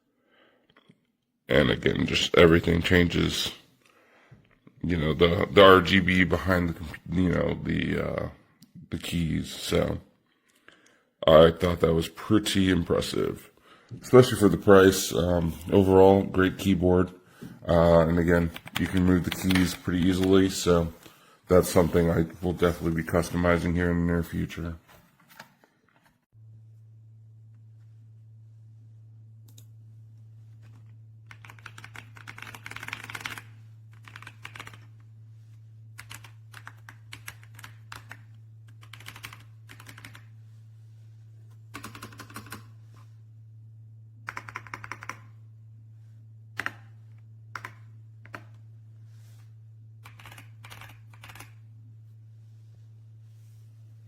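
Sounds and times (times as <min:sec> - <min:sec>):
mechanical keyboard typing: 0:18.4 - 0:20.6, 0:31.3 - 0:34.9, 0:36.0 - 0:40.3, 0:41.7 - 0:42.7, 0:44.3 - 0:45.3, 0:46.6 - 0:46.9, 0:47.6 - 0:48.5, 0:50.0 - 0:51.6
low hum: 0:26.4 - 0:32.2, 0:42.6 - 0:44.5, 0:45.2 - 0:54.0.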